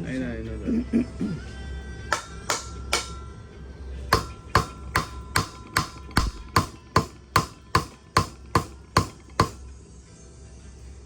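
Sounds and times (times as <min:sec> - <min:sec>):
hammer blows on metal: 0:02.1 - 0:03.4, 0:04.1 - 0:09.7.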